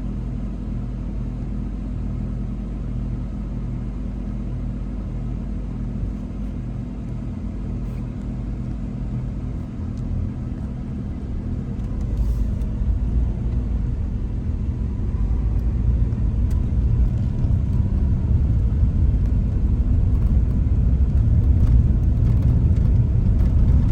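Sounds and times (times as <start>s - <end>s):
train rumbling: 11.0s - 23.9s.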